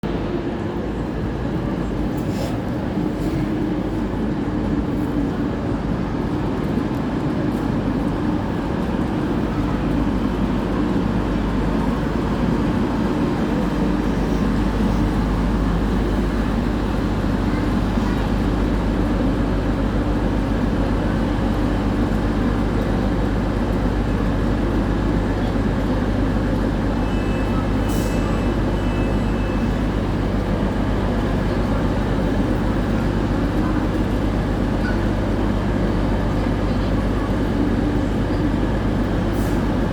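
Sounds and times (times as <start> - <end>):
train engine rumble: 0.0 - 39.9.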